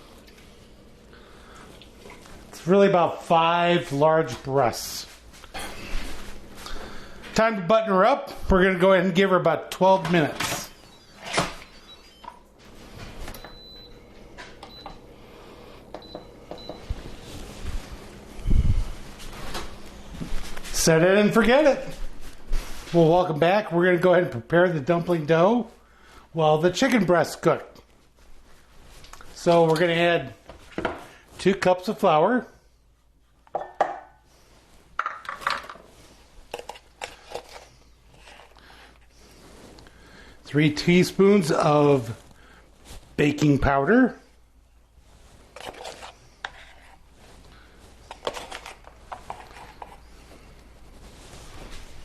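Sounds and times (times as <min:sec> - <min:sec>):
utensil scraping a bowl: 0:45.5 - 0:47.1.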